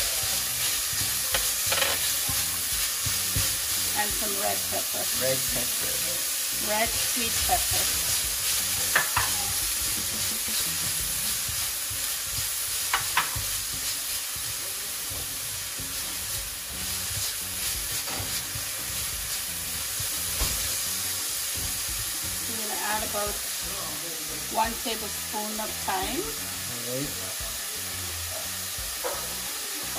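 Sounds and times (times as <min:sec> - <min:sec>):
vegetables sizzling in oil: 0:00.0 - 0:29.9
utensil knocking against pan: 0:08.8 - 0:09.4, 0:12.9 - 0:13.5.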